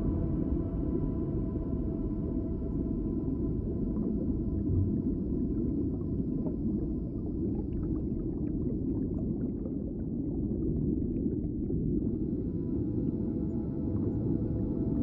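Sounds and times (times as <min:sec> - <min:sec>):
underwater rumble of moving water: 0:00.0 - 0:15.0.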